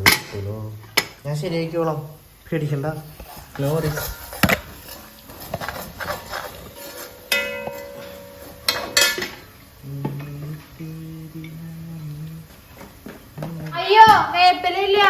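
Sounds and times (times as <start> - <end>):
metal utensils clattering: 0.0 - 1.2, 3.1 - 10.3
metal vessel ringing: 6.8 - 9.7.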